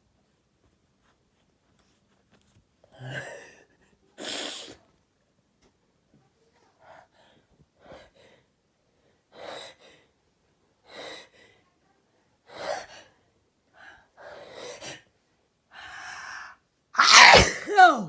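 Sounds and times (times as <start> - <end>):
person gasping before sneeze: 17.0 - 18.0.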